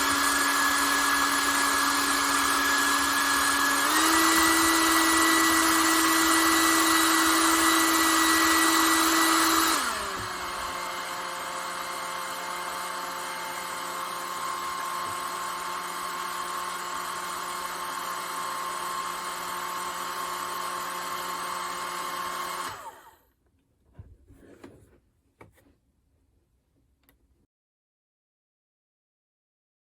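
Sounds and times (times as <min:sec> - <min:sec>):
hair dryer running: 0:00.0 - 0:23.2.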